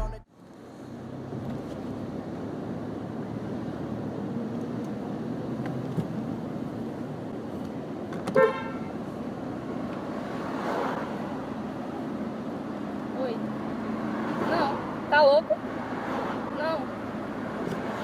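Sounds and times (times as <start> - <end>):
car horn toot: 0.0 - 0.2, 8.3 - 9.0
street traffic rumble: 0.0 - 18.0.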